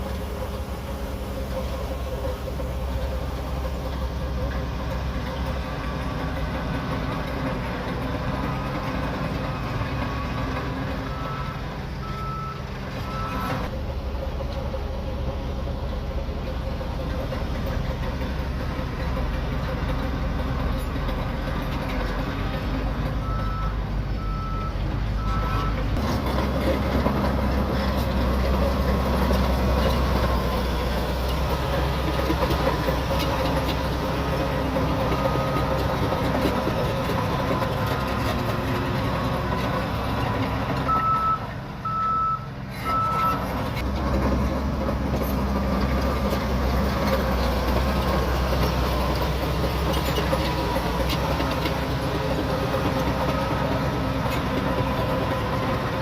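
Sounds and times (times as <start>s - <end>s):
bulldozer diesel engine running: 0.0s - 56.0s
reverse alarm beeping: 40.9s - 43.4s.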